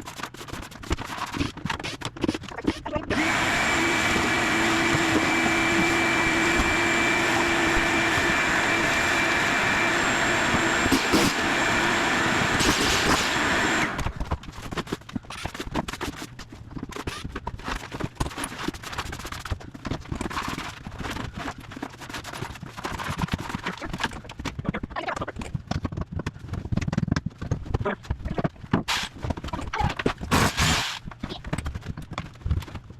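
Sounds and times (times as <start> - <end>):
power tool whining: 3.1 - 14.2, 30.3 - 31.0.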